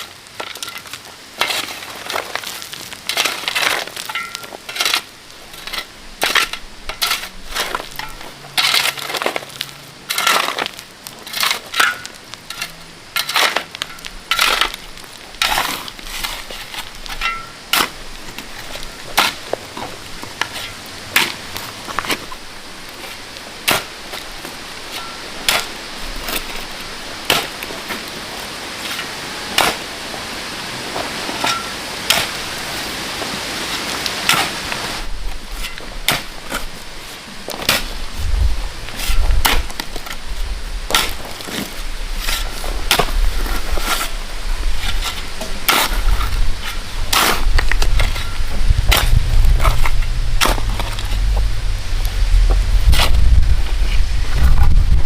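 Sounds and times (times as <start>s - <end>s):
low rumble: 46.0s - 55.0s.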